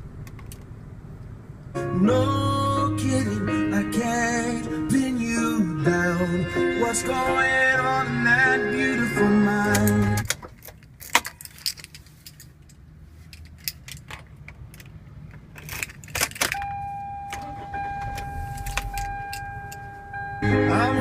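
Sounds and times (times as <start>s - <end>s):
keys jingling: 9.6s - 14.9s, 15.5s - 16.7s, 17.3s - 20.2s
low hum: 16.5s - 21.0s
steady electronic tone: 16.7s - 21.0s.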